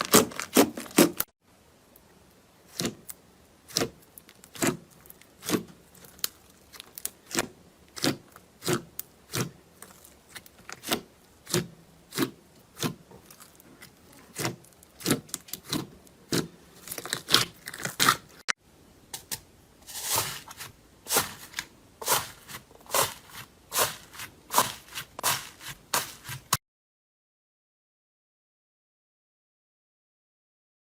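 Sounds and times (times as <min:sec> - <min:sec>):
slime crackling and popping: 0:03.7 - 0:13.6, 0:14.3 - 0:18.4.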